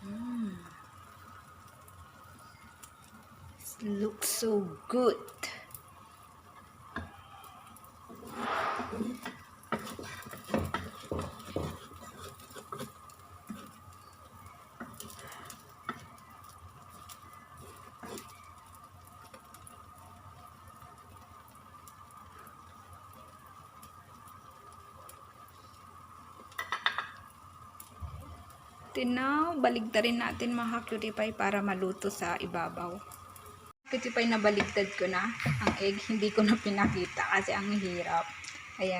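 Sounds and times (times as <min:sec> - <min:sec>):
faint steady whine: 0:00.0 - 0:11.7
omelette cooking in a pan: 0:00.0 - 0:38.9
utensil scraping a pan: 0:08.1 - 0:13.8, 0:17.5 - 0:18.4.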